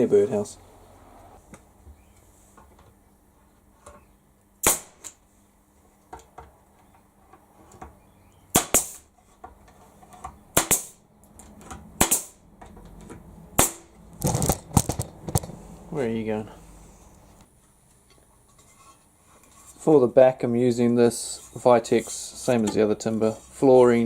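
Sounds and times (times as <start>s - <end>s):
hammer nailing boards: 8.5s - 9.1s, 10.5s - 11.0s, 12.0s - 12.4s.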